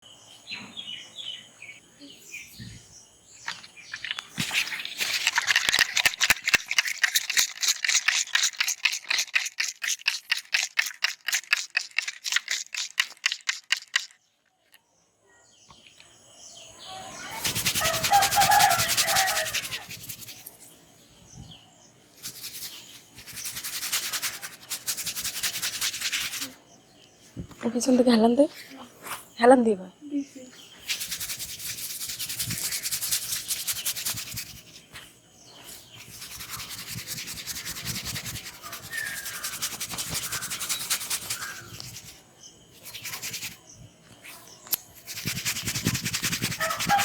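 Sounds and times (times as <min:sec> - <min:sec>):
birds chirping faintly: 0:00.0 - 0:47.0
hands rubbing hair and scalp: 0:03.5 - 0:14.1, 0:17.3 - 0:20.6, 0:22.2 - 0:26.6, 0:30.8 - 0:42.2, 0:42.8 - 0:47.0.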